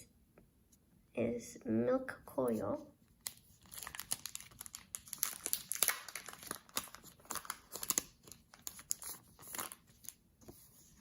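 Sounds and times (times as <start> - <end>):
plastic packaging and paper crinkling: 3.2 - 10.2.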